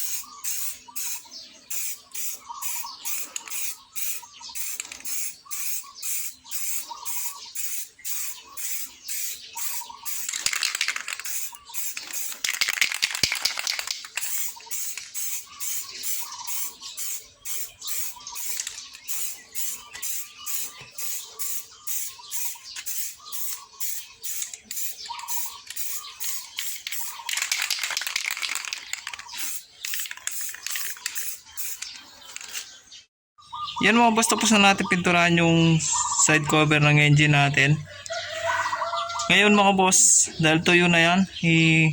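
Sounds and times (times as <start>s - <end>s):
spray paint can hissing: 0.0s - 31.9s.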